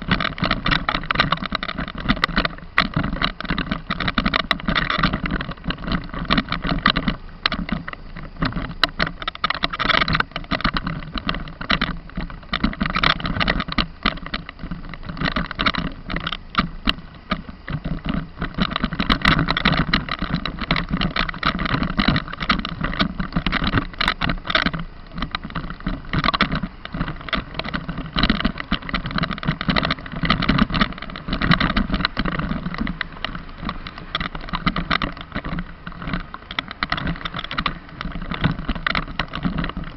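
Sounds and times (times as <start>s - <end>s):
vehicle rattling and knocking: 0.0s - 39.9s.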